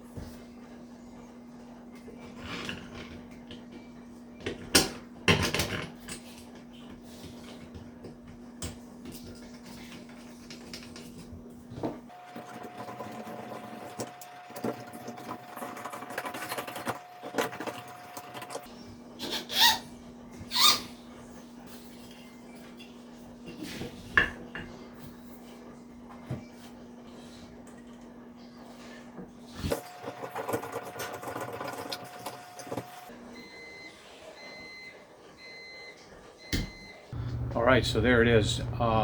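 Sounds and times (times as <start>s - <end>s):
steady low hum: 37.2s - 39.0s.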